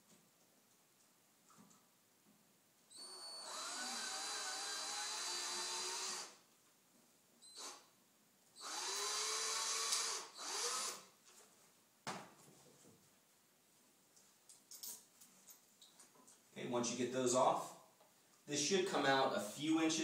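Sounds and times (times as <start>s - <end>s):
electric drill motor spinning: 2.9s - 6.4s, 8.6s - 11.1s.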